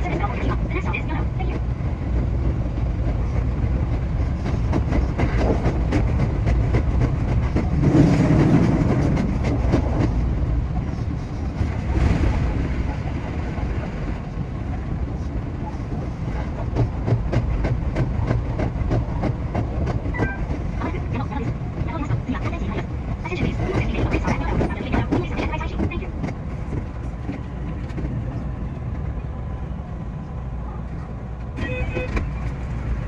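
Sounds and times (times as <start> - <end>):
electric train rumbling: 0.0 - 33.0.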